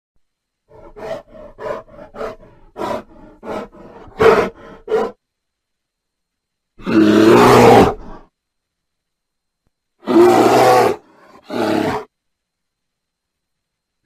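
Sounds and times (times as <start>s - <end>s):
bear grunting: 0.7s - 5.2s
bear roaring: 0.7s - 5.2s, 6.8s - 8.3s, 10.0s - 12.1s.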